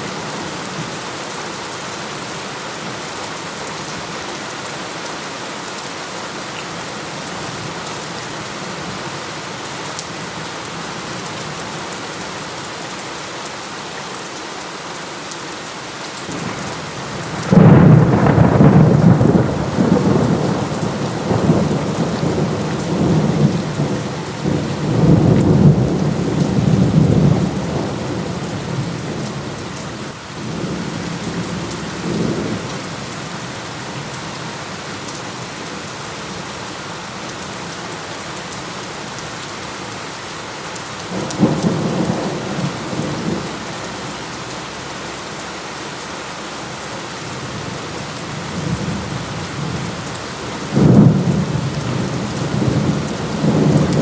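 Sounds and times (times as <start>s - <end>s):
heavy rain falling: 0.0s - 54.0s
thunder rumbling: 16.3s - 29.7s, 48.3s - 54.0s.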